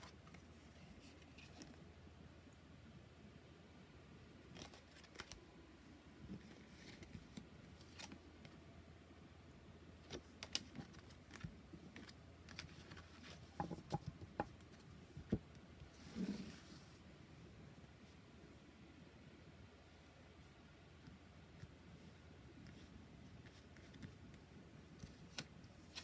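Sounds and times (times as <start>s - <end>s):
cards clicking and tapping: 10.1s - 15.4s.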